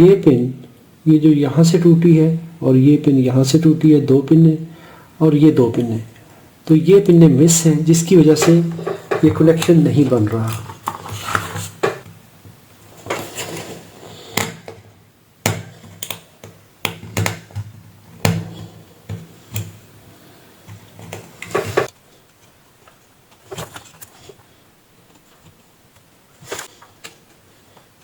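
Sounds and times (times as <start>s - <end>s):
tools clicking and knocking: 8.4s - 9.8s.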